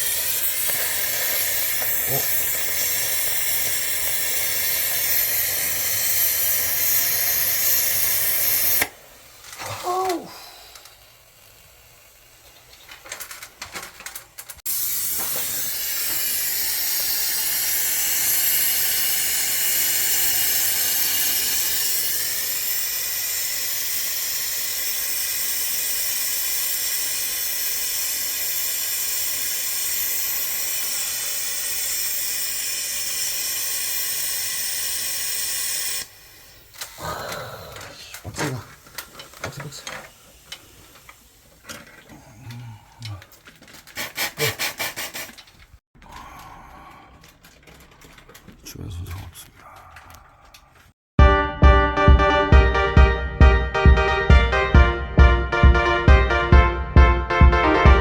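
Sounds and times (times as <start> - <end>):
torch flame hissing: 0.0 - 13.5, 14.6 - 45.5.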